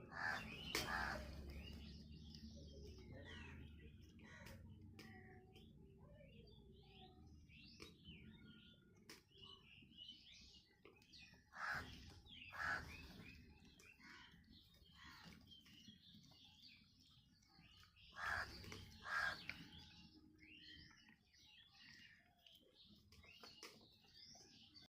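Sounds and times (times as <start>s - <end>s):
small birds chirping: 0.0s - 24.9s
crow cawing: 0.1s - 1.3s, 11.5s - 13.0s, 18.2s - 19.5s.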